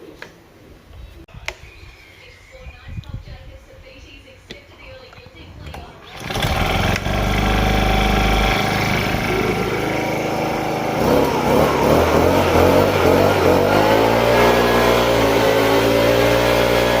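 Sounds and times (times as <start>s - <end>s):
blower engine revving: 6.0s - 17.0s.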